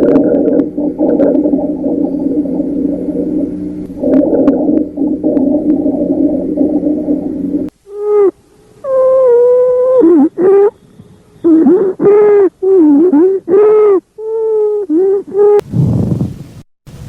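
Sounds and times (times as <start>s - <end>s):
low musical breath sound: 0.3s - 7.7s.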